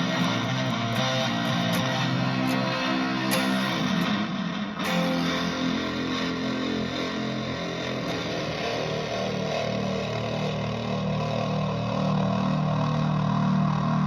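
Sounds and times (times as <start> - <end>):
electric guitar chord ringing: 0.0 - 10.8.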